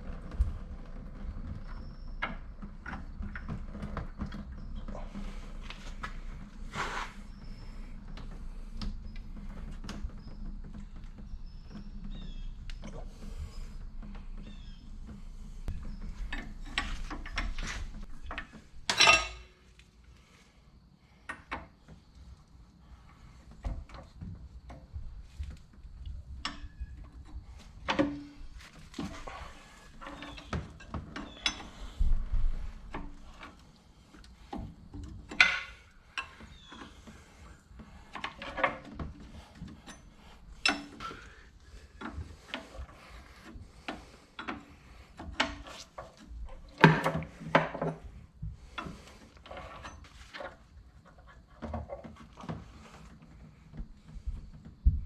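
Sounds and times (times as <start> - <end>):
tools clanking on steel parts: 15.7 - 19.7, 38.1 - 41.3.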